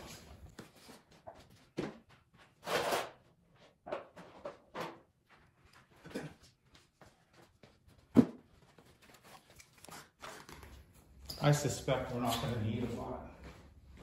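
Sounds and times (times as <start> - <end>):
objects knocking and clunking: 1.2 - 5.4.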